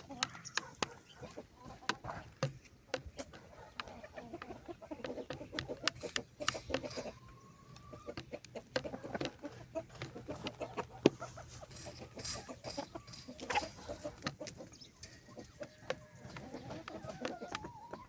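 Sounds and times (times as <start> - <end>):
chickens clucking: 0.0 - 18.0.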